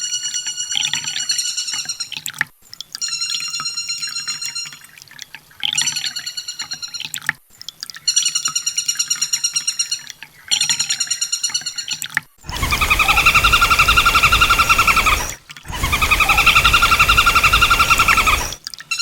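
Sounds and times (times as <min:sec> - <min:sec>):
bird buzzy pulsed trills: 0:12.5 - 0:18.6
loud pulsing sound: 0:12.5 - 0:18.6.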